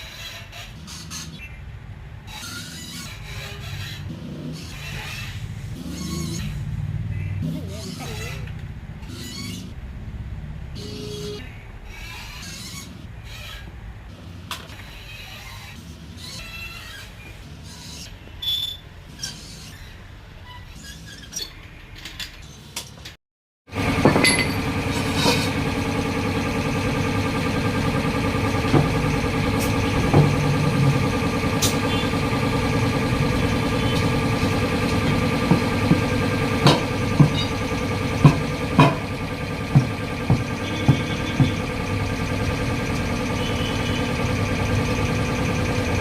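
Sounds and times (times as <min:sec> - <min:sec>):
brief squeak: 0:14.8 - 0:21.6
motor humming: 0:23.8 - 0:46.0.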